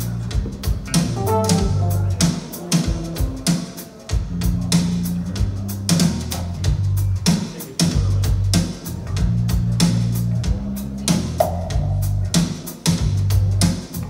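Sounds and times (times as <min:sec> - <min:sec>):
held bass line: 0:01.2 - 0:02.4.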